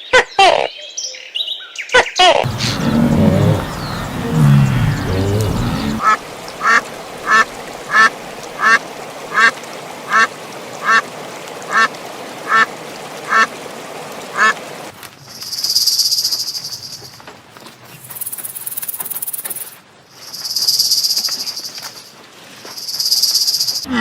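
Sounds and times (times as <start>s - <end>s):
low pitched animal sounds: 2.4s - 8.1s
animal calling: 2.4s - 8.8s.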